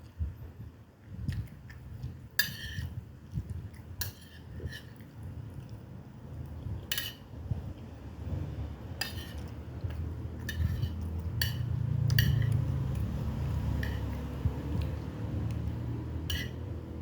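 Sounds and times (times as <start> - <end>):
cutlery clinking on a dish: 2.4 - 2.9, 6.9 - 7.3, 9.0 - 9.5, 10.4 - 12.6, 13.8 - 14.2, 16.3 - 16.6
eating sounds: 8.9 - 17.0.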